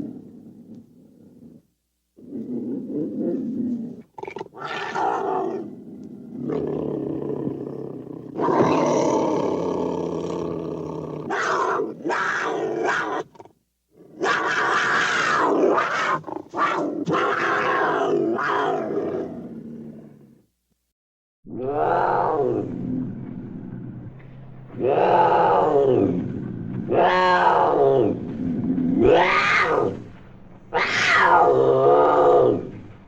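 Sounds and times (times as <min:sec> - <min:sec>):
big cat roaring and growling: 0:00.0 - 0:20.4, 0:21.5 - 0:33.0.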